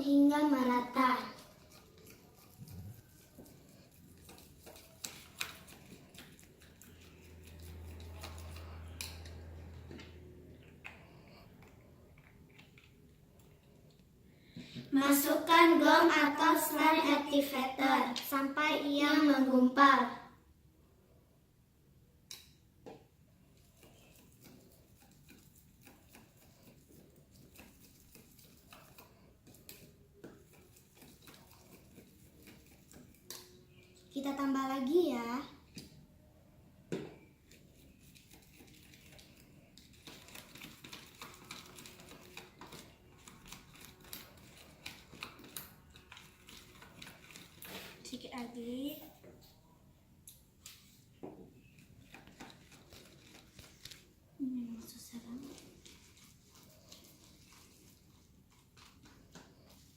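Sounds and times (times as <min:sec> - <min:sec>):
stirrer scraping a container: 0:00.0 - 0:13.5, 0:23.6 - 0:34.9, 0:37.4 - 0:48.7, 0:54.9 - 0:59.9.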